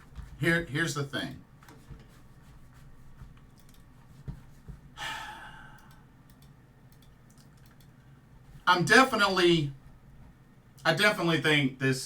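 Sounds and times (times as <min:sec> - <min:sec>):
man sighing: 0:05.0 - 0:06.1.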